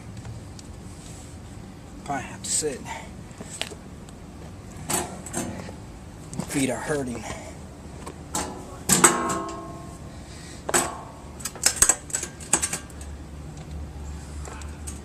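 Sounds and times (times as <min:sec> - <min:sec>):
metallic clanks: 0:08.3 - 0:09.9, 0:10.7 - 0:13.1.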